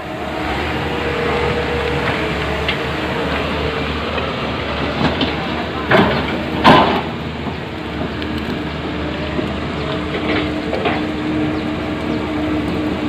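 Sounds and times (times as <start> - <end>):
excavator engine running: 0.0 - 13.0
loud metallic clank: 5.9 - 7.2.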